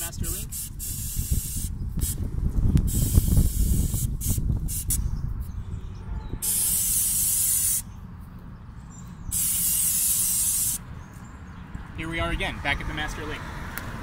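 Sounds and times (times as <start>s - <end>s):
low rumble: 1.7s - 6.8s
aerosol spray hissing: 6.4s - 7.8s, 9.3s - 10.8s.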